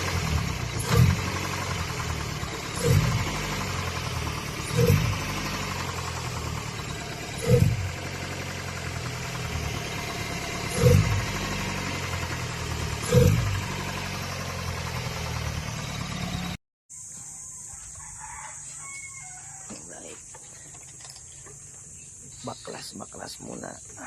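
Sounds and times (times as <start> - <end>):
car engine idling and revving: 0.0 - 16.6.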